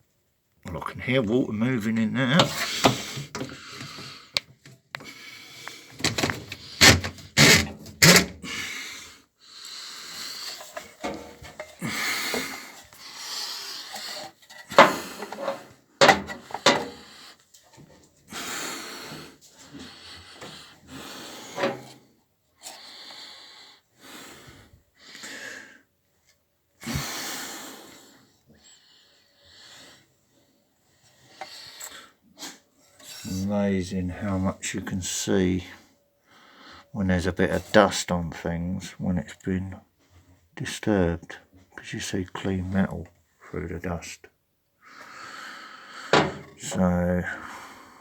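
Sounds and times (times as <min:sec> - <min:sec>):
knocks clicks and rubbing inside machine: 0:06.0 - 0:08.4.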